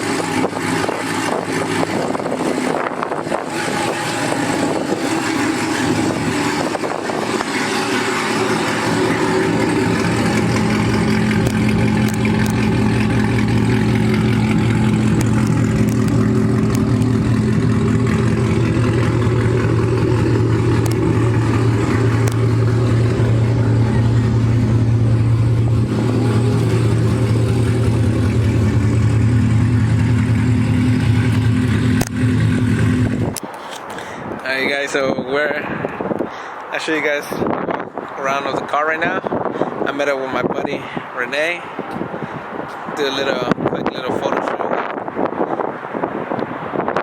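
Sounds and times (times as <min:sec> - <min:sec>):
car engine droning at cruise: 0:00.0 - 0:34.4.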